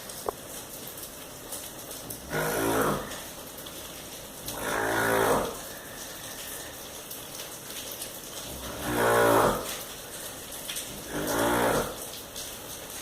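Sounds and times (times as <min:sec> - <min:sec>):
steady hiss: 0:00.0 - 0:13.0
loud deep snoring: 0:02.2 - 0:03.3, 0:04.5 - 0:05.8, 0:08.5 - 0:09.8, 0:11.0 - 0:12.0.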